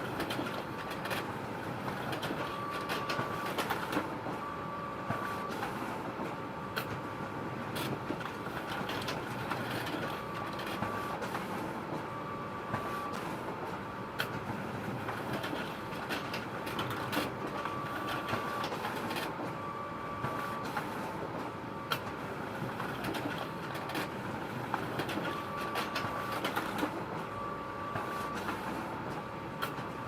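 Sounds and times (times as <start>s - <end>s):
photocopier whirring: 0.0s - 30.0s.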